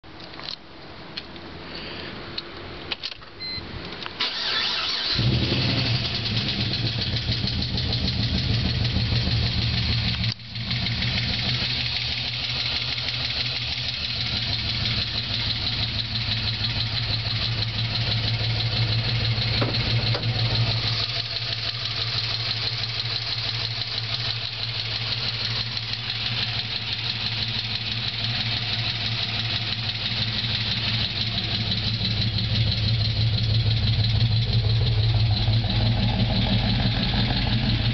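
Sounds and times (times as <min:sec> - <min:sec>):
car engine cranking and idling: 0:02.4 - 0:37.9
fast valvetrain ticking: 0:06.1 - 0:37.9.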